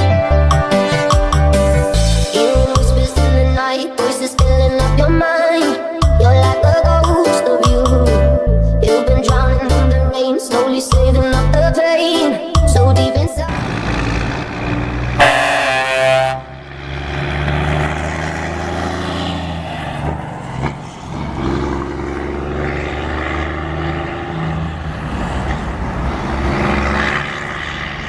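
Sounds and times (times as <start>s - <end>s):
truck diesel engine rumbling: 1.6s - 3.6s, 12.6s - 28.0s
truck air horn blast: 13.6s - 17.2s.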